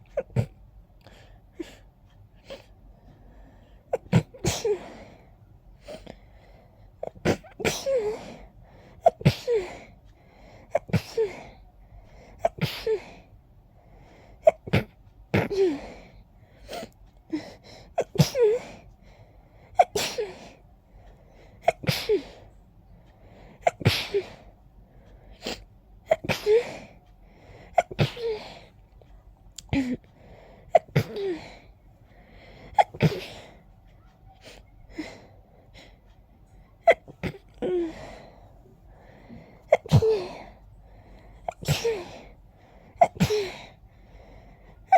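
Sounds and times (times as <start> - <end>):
person sneezing: 41.5 - 42.2.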